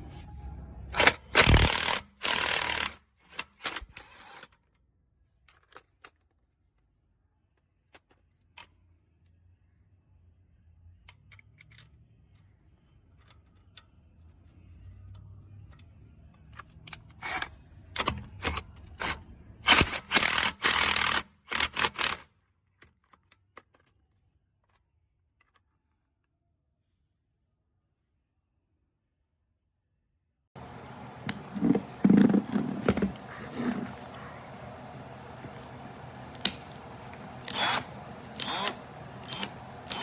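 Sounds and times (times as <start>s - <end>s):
impact wrench rattling bursts: 1.0s - 4.4s, 19.7s - 22.2s, 30.6s - 40.0s
faint low hum: 30.6s - 40.0s.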